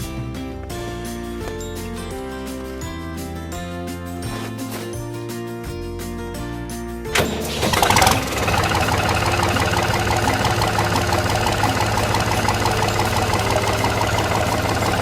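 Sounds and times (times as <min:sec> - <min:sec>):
tractor diesel engine idling: 0:07.2 - 0:15.0.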